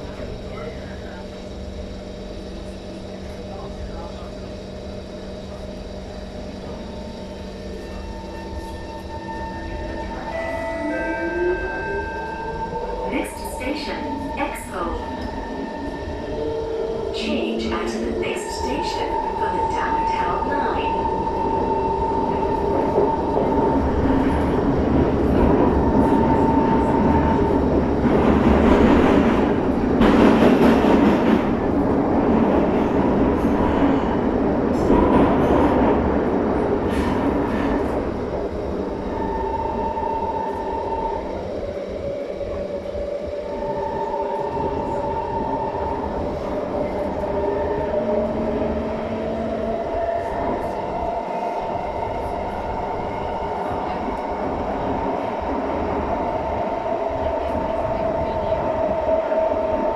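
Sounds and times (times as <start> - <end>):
train wheels rumbling on track: 0.0 - 59.9.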